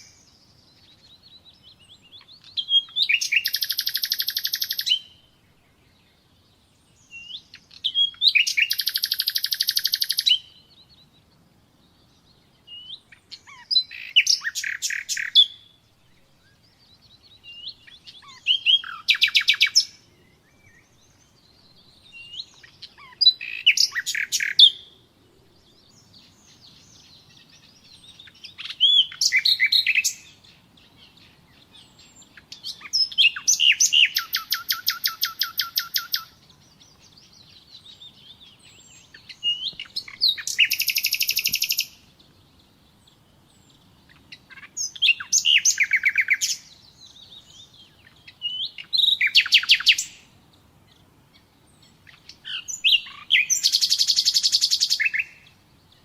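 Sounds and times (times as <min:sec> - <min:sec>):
nightingale singing: 0:00.0 - 0:56.0.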